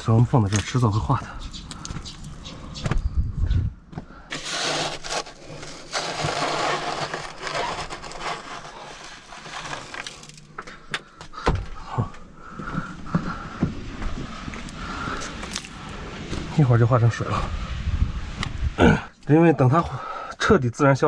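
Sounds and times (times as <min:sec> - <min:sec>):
plastic scraper scraping ice: 0:04.3 - 0:10.8.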